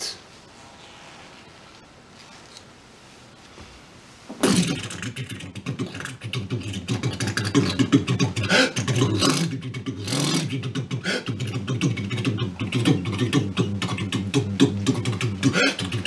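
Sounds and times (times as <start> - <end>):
man beatboxing: 4.4 - 16.0.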